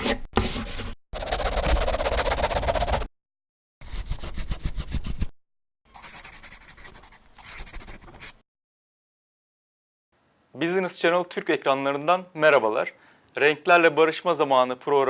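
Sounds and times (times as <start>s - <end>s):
fast scratching strokes: 1.2s - 3.1s, 3.8s - 5.3s, 5.9s - 8.4s.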